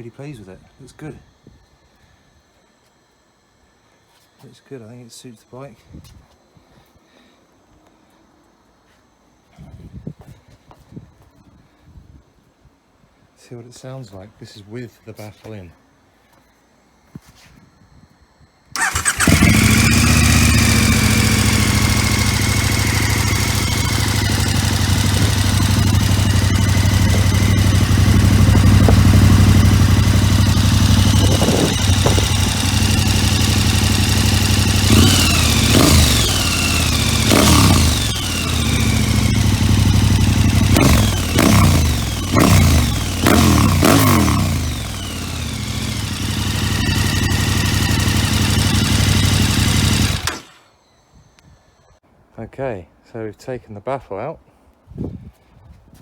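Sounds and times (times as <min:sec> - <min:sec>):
motorcycle engine idling and revving: 0:18.8 - 0:50.8.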